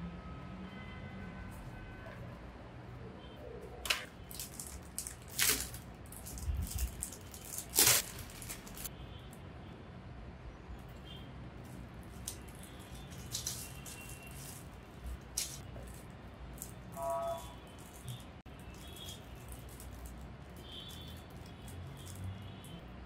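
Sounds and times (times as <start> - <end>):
keyboard and packaging rattling: 3.8 - 8.9, 11.7 - 22.6.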